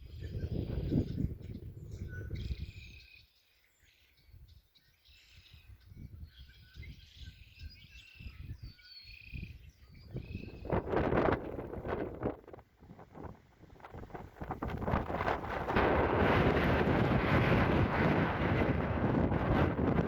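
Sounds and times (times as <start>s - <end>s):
wind rumbling on microphone: 0.0s - 3.2s, 4.2s - 20.0s
small birds chirping: 0.0s - 11.8s.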